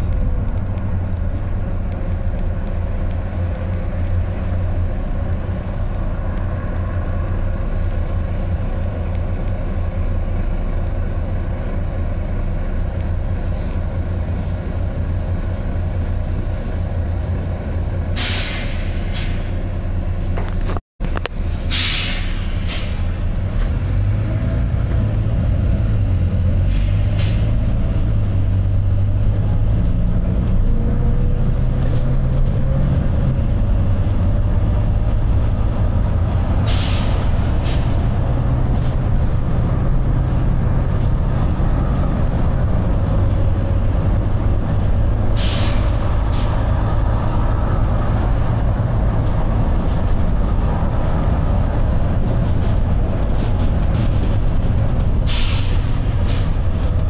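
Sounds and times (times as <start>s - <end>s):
bus diesel engine working hard: 0.0s - 57.0s
road rumble: 0.0s - 57.0s.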